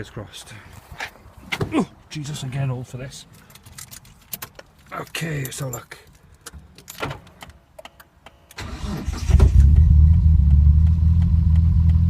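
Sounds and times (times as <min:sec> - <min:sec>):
car engine cranking and starting: 0:08.5 - 0:12.0.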